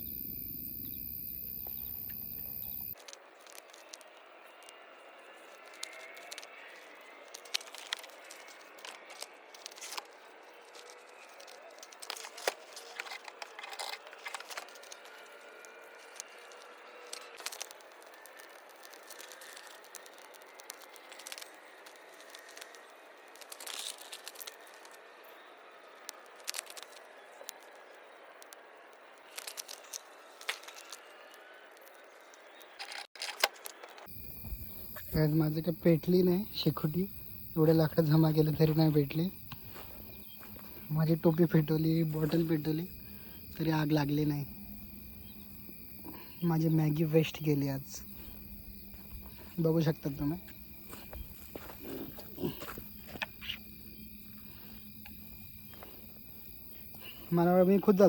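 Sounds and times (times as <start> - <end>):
sticks and plastic handled: 3.0 - 25.3, 26.0 - 27.7, 29.2 - 32.0, 32.8 - 44.3
fire crackling and snapping: 5.4 - 32.8.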